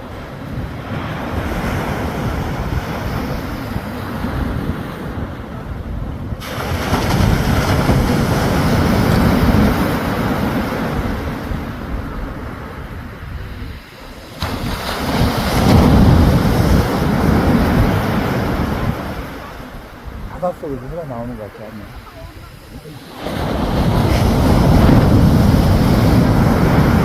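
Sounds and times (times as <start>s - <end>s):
surf washing on shore: 0.0s - 27.0s
wind buffeting microphone: 0.0s - 27.0s.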